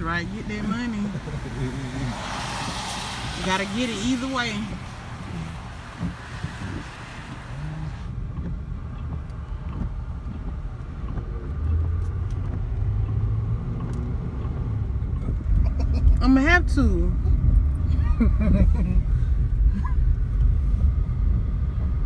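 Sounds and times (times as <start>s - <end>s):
car engine and road rumble: 0.0s - 22.0s
wind hiss: 0.4s - 8.1s.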